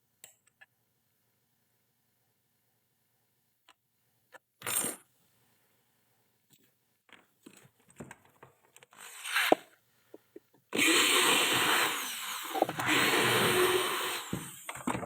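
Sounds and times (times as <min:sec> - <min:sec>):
handheld power tool running: 0:10.8 - 0:14.9.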